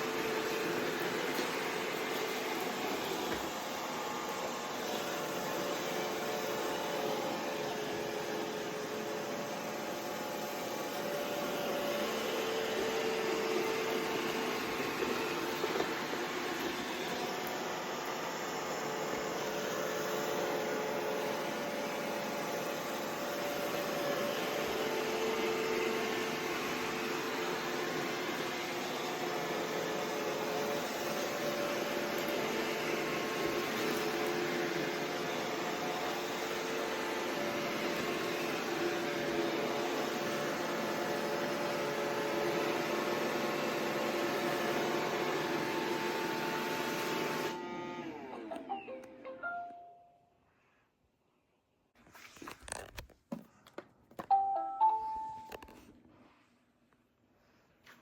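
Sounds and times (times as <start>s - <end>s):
robot vacuum whirring: 0.0s - 49.2s.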